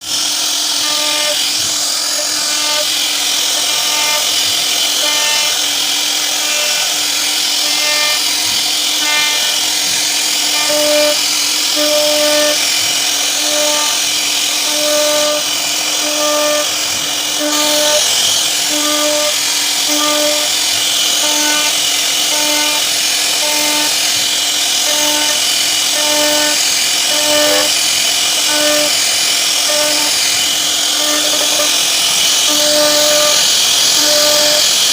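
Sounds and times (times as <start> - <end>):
wood router cutting: 0.0 - 34.9
pulsing tone: 24.8 - 34.7.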